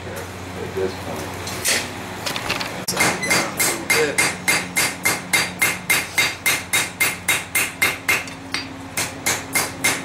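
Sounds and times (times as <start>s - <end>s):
hammer striking metal on anvil: 2.9s - 10.0s.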